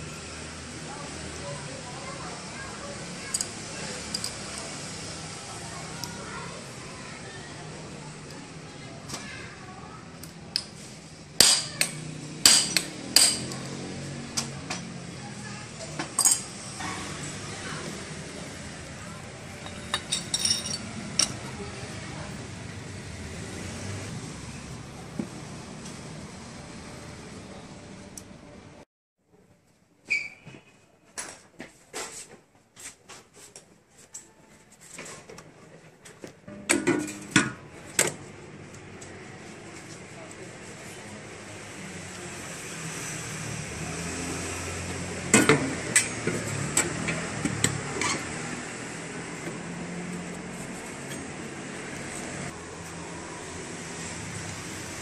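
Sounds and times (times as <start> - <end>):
metal tools clinking and knocking: 16.2 - 16.5, 19.6 - 21.5.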